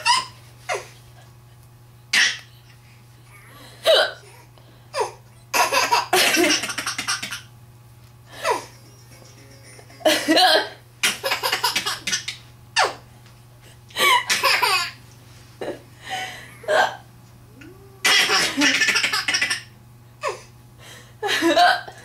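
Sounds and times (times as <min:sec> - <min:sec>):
woman hiccuping: 0:03.8 - 0:04.3, 0:16.6 - 0:17.1
person laughing: 0:08.3 - 0:10.8, 0:21.2 - 0:22.0.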